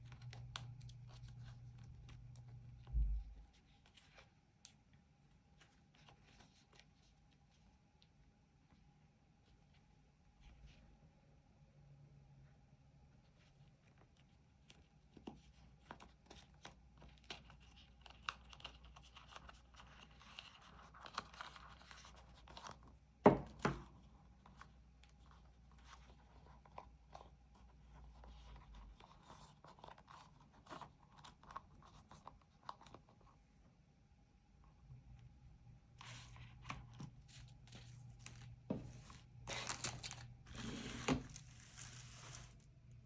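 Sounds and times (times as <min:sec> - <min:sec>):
packaging rustling: 0:36.1 - 0:42.8.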